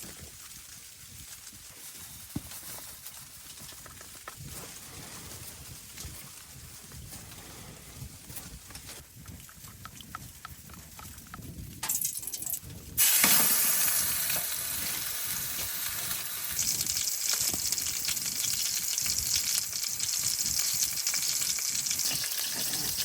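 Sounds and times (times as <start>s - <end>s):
wood stove fire crackling: 13.0s - 23.0s.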